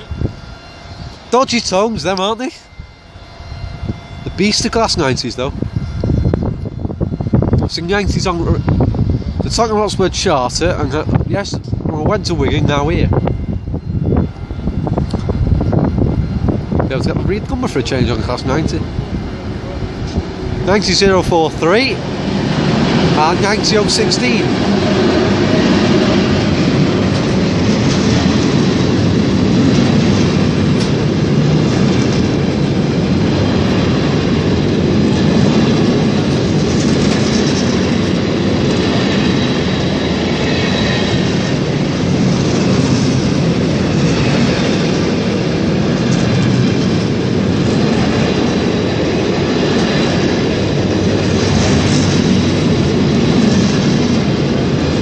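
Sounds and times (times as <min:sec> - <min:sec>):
freight train wheels clattering: 0:14.3 - 0:55.0.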